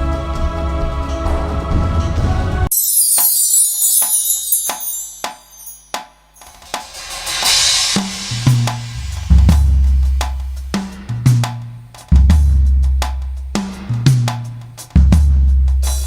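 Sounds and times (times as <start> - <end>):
cymbal swell: 2.8 - 11.2
cymbal crash: 3.2 - 11.4
drum strikes: 4.0 - 16.0
bass notes: 7.5 - 15.8.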